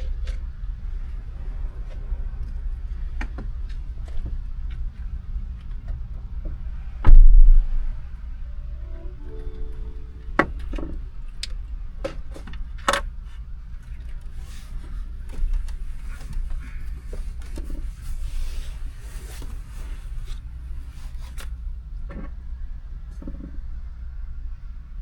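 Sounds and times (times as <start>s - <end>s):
steady low rumble: 4.8s - 20.9s.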